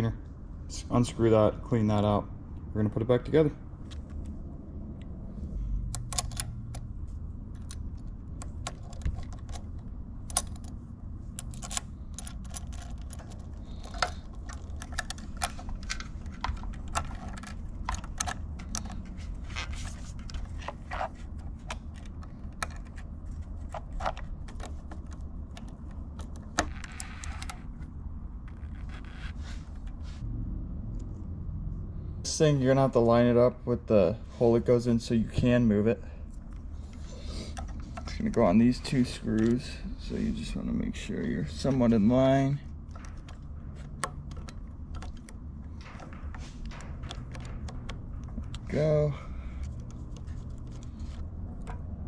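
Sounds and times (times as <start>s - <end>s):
low steady hum: 0.0s - 52.0s
metal parts and tools clinking: 7.6s - 23.0s.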